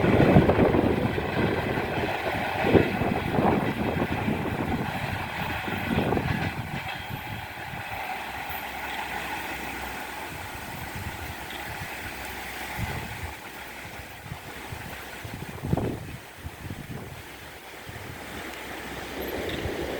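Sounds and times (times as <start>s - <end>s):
train wheel knocks: 0.0s - 9.6s
train rumbling on rails: 0.0s - 19.9s.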